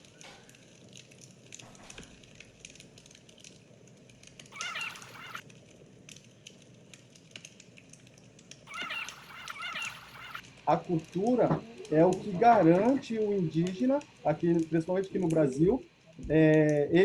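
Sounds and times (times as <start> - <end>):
faint scattered ticking: 0.1 - 16.8
bird wavering call: 4.5 - 5.4, 8.7 - 10.4.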